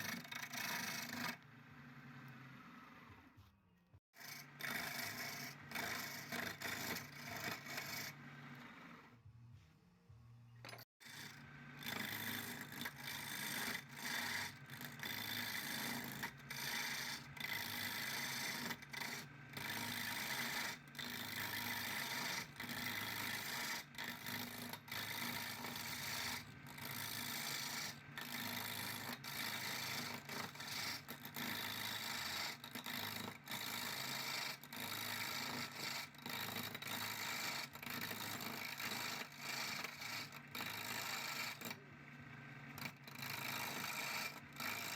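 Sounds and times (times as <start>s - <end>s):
abrasive rasping against surface: 11.0s - 41.9s.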